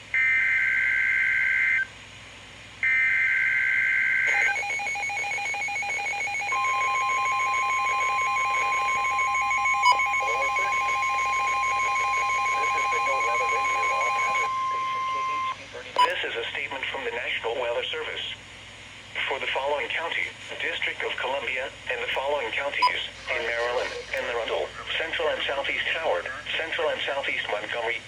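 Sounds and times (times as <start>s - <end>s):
steady warning alarm tone: 2.8s - 16.2s.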